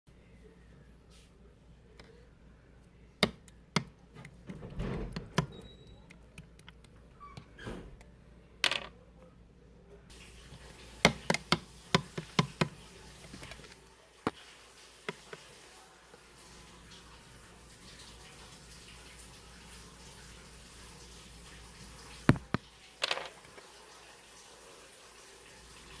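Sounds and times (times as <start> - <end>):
faint steady hiss: 8.2 - 26.0.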